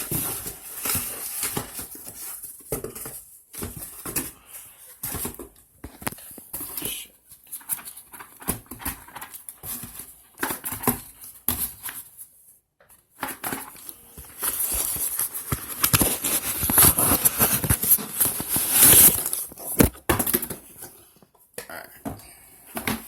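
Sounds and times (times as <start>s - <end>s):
packaging rustling and crackling: 0.0s - 6.6s, 13.2s - 20.6s.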